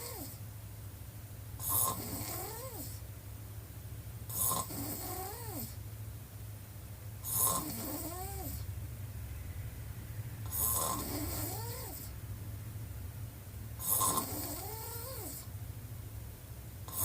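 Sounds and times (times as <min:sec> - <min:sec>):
woman snoring: 0:00.0 - 0:00.4, 0:01.6 - 0:03.0, 0:04.3 - 0:05.7, 0:07.2 - 0:08.6, 0:10.5 - 0:12.1, 0:13.8 - 0:15.4
steady low hum: 0:00.0 - 0:17.0.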